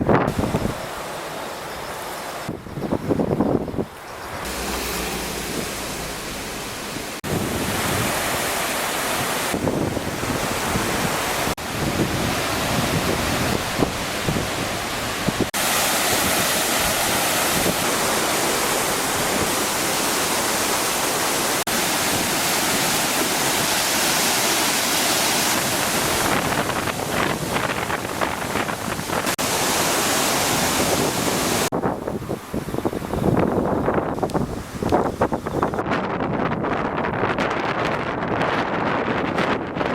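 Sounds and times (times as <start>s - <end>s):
wind buffeting microphone: 0.0s - 1.0s, 2.4s - 39.9s
river water rushing: 0.0s - 35.7s.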